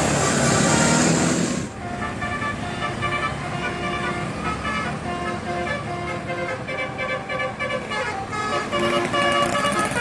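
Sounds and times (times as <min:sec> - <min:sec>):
loud rush of noise: 0:00.0 - 0:01.8
musical bus horn melody: 0:00.3 - 0:10.0.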